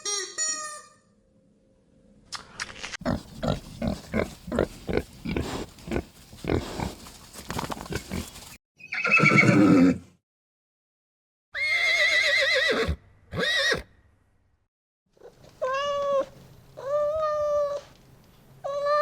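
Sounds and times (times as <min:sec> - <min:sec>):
farm animal grunting: 0:03.0 - 0:08.5.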